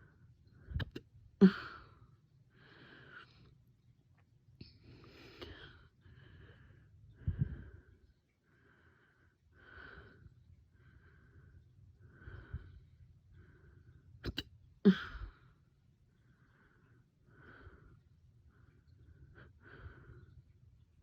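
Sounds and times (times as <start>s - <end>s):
person hiccuping: 14.2s - 15.2s.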